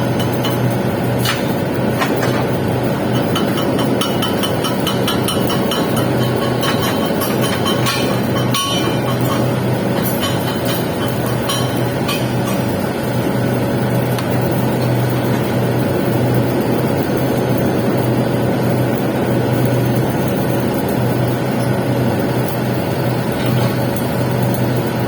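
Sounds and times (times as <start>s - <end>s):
welding arc hissing: 0.0s - 16.8s
low steady hum: 0.0s - 25.0s.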